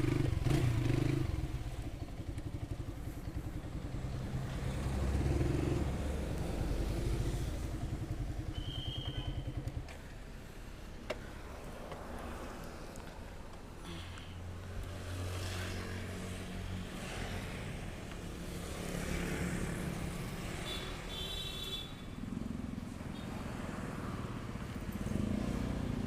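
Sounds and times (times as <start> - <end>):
motorcycle engine running: 0.0 - 10.5.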